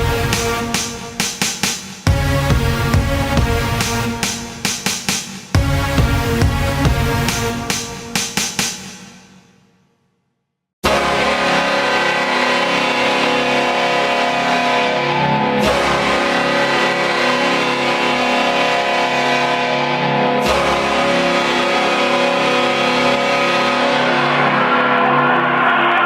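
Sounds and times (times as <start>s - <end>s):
arena goal horn blaring: 0.0s - 1.4s, 10.8s - 26.0s.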